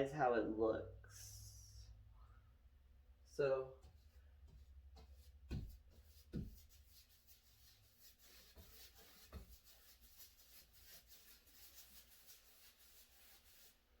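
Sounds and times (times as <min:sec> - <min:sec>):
soft knocks: 0:03.8 - 0:06.7
paintbrush rubbing on wall: 0:03.8 - 0:14.0.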